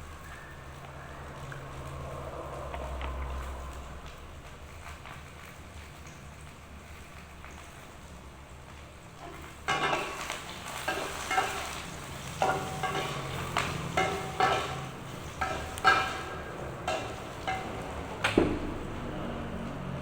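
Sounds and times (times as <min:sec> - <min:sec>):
metal utensil scraping metal pan: 0:09.2 - 0:18.3
pan ringing: 0:09.6 - 0:19.6.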